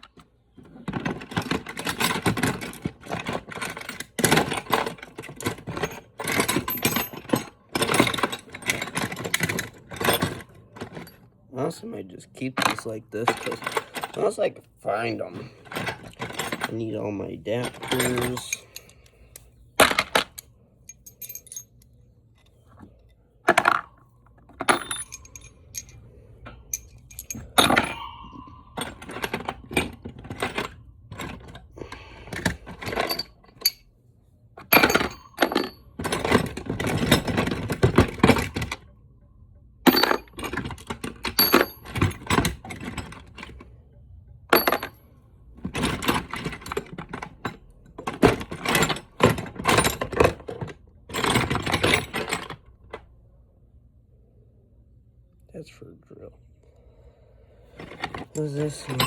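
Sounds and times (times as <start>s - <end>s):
metal tools clinking and clattering: 0.9s - 11.2s, 12.5s - 22.9s, 24.5s - 33.9s, 34.6s - 38.8s, 39.9s - 43.6s, 44.5s - 45.0s, 45.6s - 52.6s, 57.8s - 59.0s.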